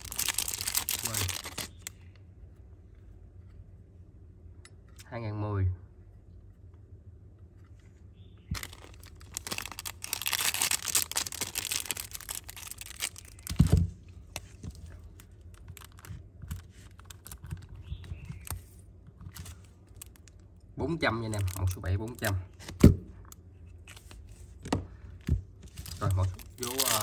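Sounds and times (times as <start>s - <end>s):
packaging wrapper crinkling and tearing: 0.0s - 2.0s, 8.5s - 20.5s, 21.2s - 22.8s, 25.6s - 27.0s.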